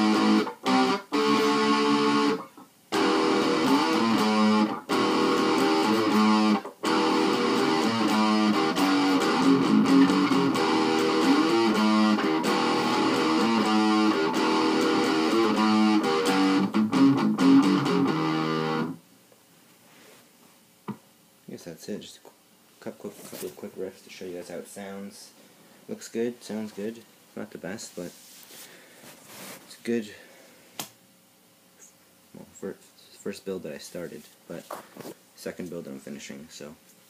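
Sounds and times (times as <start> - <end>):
distorted electric guitar riffs: 0.0 - 19.0.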